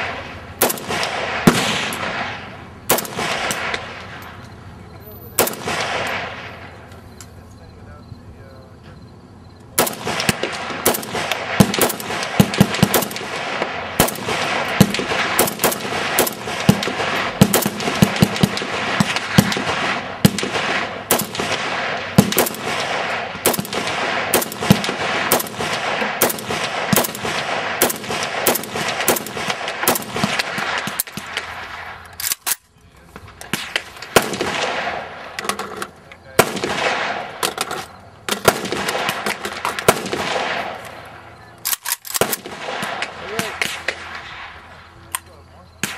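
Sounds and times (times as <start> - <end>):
rifle shots: 0.0 - 4.4, 5.2 - 6.9, 9.8 - 32.6, 33.2 - 45.9.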